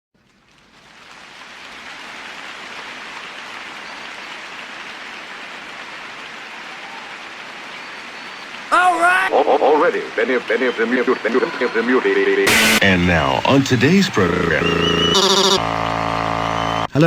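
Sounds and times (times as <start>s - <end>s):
rain-like hiss: 0.2s - 8.7s.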